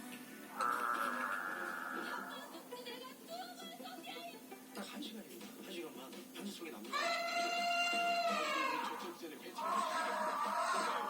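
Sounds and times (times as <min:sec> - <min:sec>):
quiet background music: 0:00.0 - 0:11.0.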